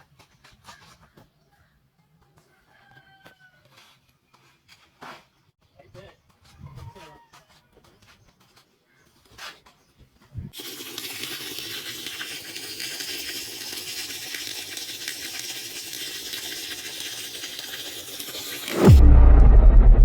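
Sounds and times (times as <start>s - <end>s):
water running: 10.6s - 18.9s.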